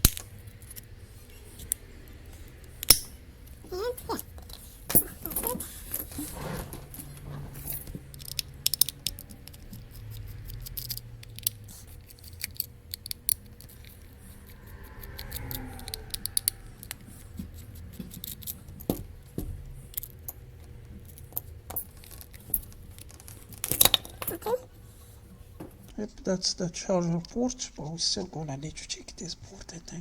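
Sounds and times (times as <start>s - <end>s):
low steady hum: 0.0s - 30.0s
plastic parts clicking and clattering: 4.4s - 14.0s, 17.5s - 24.6s.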